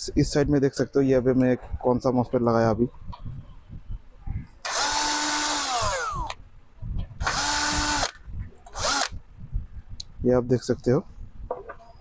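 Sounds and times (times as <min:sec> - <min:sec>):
electric drill motor running: 0:04.7 - 0:06.4, 0:07.2 - 0:09.2.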